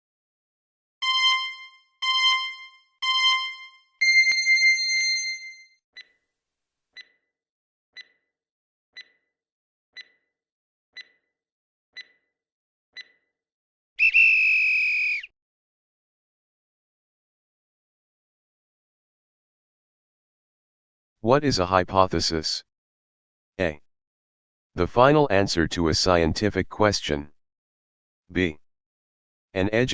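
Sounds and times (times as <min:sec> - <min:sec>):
timer ticks: 0:01.0 - 0:03.8, 0:06.0 - 0:06.2, 0:07.0 - 0:07.2, 0:08.0 - 0:08.3, 0:09.0 - 0:09.3, 0:10.0 - 0:10.3, 0:11.0 - 0:11.3, 0:12.0 - 0:12.3, 0:13.0 - 0:13.2
short electronic beeps: 0:01.0 - 0:04.7
held electronic tone: 0:01.0 - 0:05.6.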